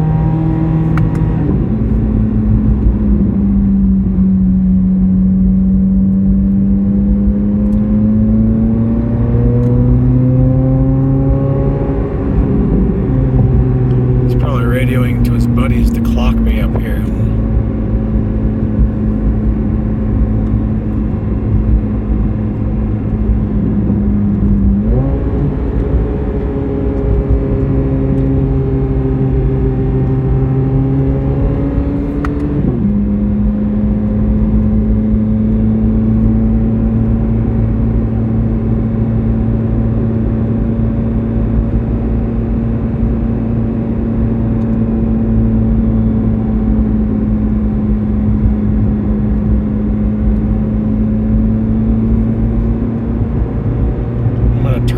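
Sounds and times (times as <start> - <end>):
road noise: 9.4 - 26.6, 49.3 - 54.9
car engine running: 9.6 - 27.8, 46.4 - 54.9.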